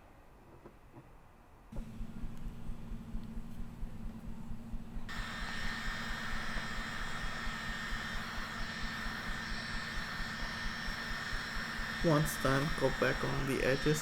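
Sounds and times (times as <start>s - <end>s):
heat gun blower whining: 5.0s - 14.0s.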